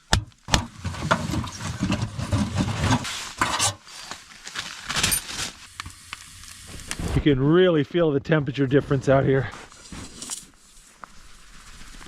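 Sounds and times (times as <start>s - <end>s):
axe striking wood: 0.1s - 0.7s
wood clattering and scraping: 0.4s - 5.4s.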